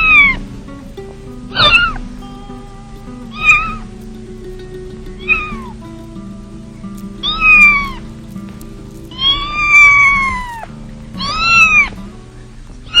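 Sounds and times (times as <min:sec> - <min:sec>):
kitten meowing: 0:00.0 - 0:00.4, 0:01.5 - 0:02.0, 0:03.3 - 0:03.8, 0:05.2 - 0:05.7, 0:07.2 - 0:08.0, 0:09.1 - 0:12.0
soft background music: 0:00.0 - 0:13.0.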